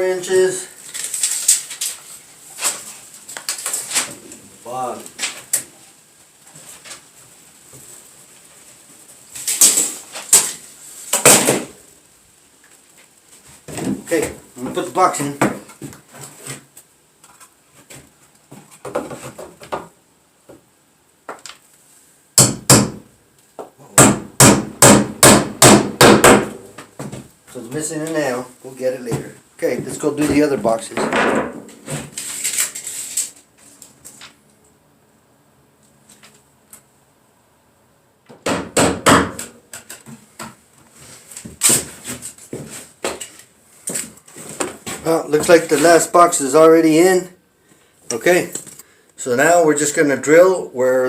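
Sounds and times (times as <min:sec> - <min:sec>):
hammer striking nails: 0:22.4 - 0:23.0, 0:24.0 - 0:26.7, 0:38.3 - 0:39.6
sharp knocks and bangs: 0:22.4 - 0:23.0, 0:24.0 - 0:27.2, 0:30.3 - 0:32.2.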